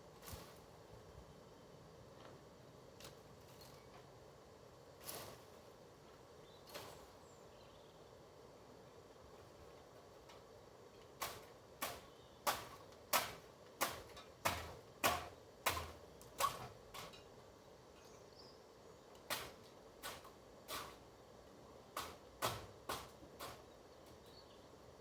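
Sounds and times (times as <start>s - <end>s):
hand tool chopping wood: 11.2s - 17.1s, 22.0s - 23.6s.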